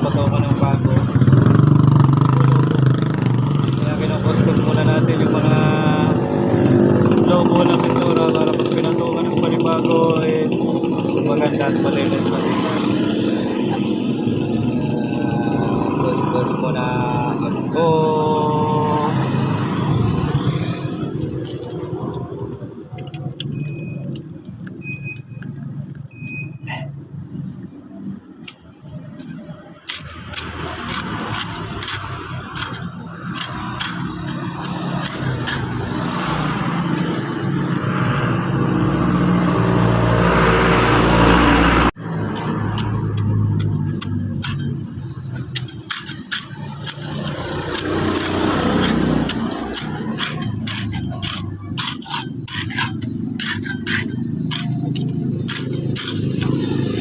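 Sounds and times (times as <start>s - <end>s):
vehicle engine hum: 0.0s - 57.0s
metal scraper rasping paint: 19.7s - 24.2s, 28.4s - 37.5s, 42.0s - 57.0s.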